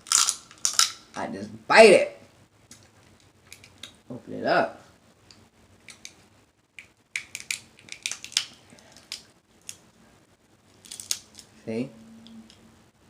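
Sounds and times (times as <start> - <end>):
crab shell cracking: 0.0 - 1.1, 6.7 - 9.8, 10.8 - 11.5.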